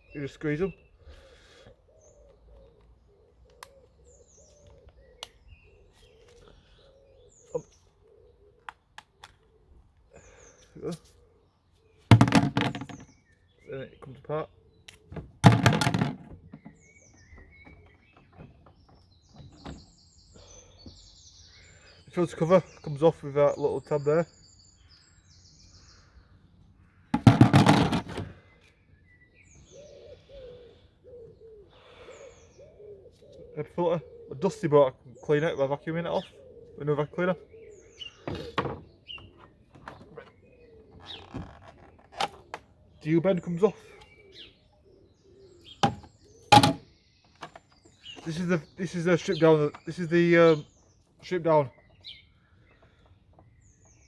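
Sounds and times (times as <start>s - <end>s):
birds chirping: 0.0s - 54.0s
pigeon cooing: 0.8s - 11.5s, 29.6s - 41.2s, 43.4s - 46.8s
plastic cover clicks and knocks: 12.1s - 13.1s, 15.2s - 16.8s, 27.2s - 28.3s, 45.8s - 46.8s
low wavering cooing call: 29.6s - 34.6s.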